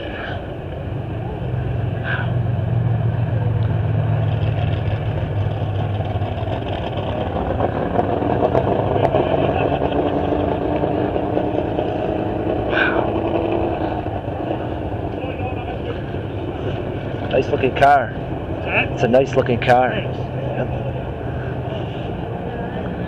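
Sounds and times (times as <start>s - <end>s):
car engines idling: 0.0s - 23.0s
higher engine note climbing: 0.0s - 23.0s.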